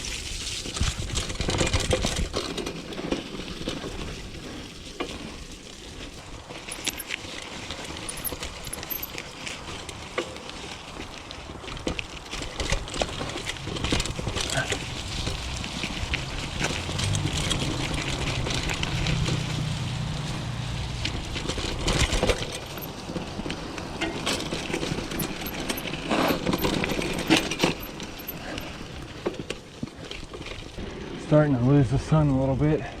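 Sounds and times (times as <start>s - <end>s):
bike tyres on gravel: 0.0s - 33.0s
chain and frame rattling: 6.2s - 10.4s, 12.3s - 19.7s, 20.9s - 29.6s.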